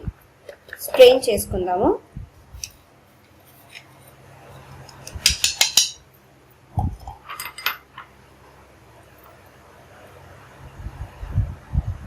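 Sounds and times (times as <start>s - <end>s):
metal tea strainer clinking: 5.0s - 6.0s.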